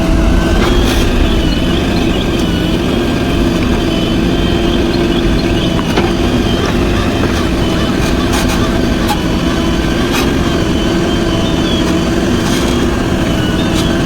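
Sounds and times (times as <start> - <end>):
heavy diesel engine running: 0.0 - 14.0.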